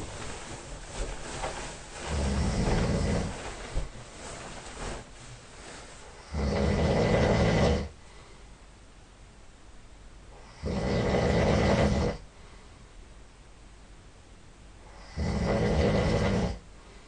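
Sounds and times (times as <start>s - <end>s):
quiet breathing: 0.0s - 8.7s, 10.3s - 13.1s, 14.8s - 17.0s
person snoring loudly: 2.1s - 3.3s, 6.2s - 8.0s, 10.4s - 12.2s, 14.9s - 16.6s.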